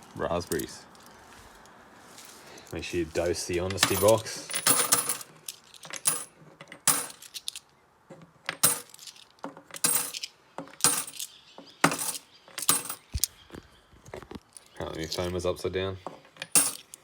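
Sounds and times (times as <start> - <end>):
coins clinking into a box: 3.7 - 7.7, 8.5 - 13.2, 16.4 - 17.0.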